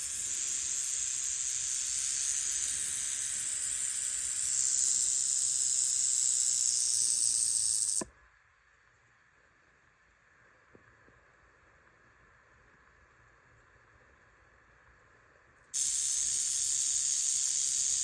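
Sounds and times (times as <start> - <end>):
rattlesnake tail rattling: 0.0 - 8.0, 15.8 - 18.0.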